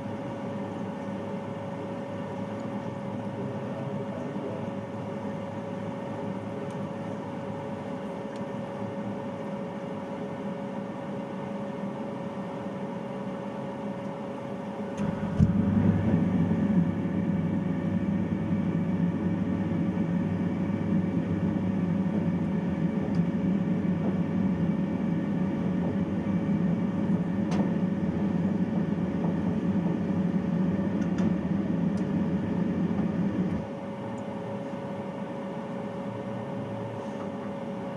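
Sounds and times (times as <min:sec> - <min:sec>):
water heater humming: 0:12.3 - 0:37.9
burner low rumble: 0:15.0 - 0:33.6.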